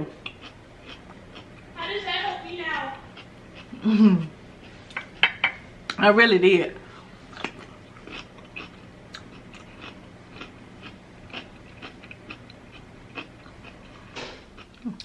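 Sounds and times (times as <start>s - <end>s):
chewing crunchy cucumber: 0.2s - 1.7s, 3.1s - 4.8s, 7.3s - 15.0s.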